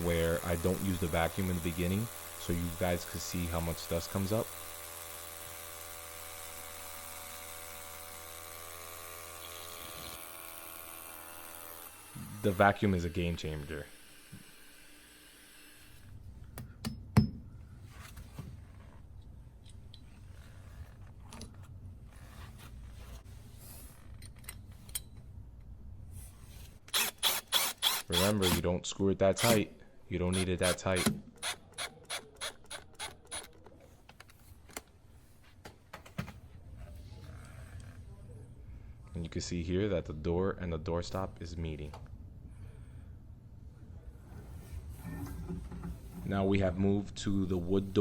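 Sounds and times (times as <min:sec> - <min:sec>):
power drill motor whining: 0:00.0 - 0:16.2, 0:26.9 - 0:28.6, 0:29.4 - 0:29.7, 0:30.3 - 0:33.7.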